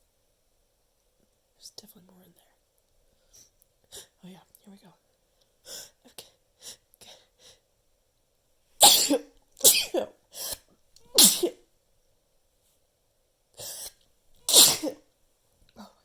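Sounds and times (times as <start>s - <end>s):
person sneezing: 8.8s - 11.6s, 14.5s - 15.0s.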